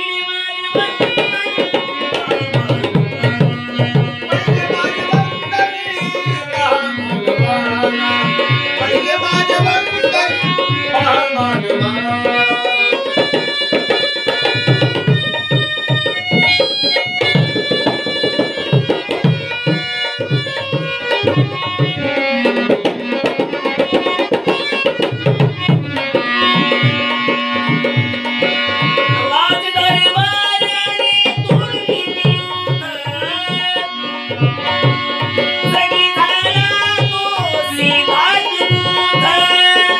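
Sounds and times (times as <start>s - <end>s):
tabla and drums beat: 0.0s - 39.9s
bending melody line: 0.8s - 13.4s.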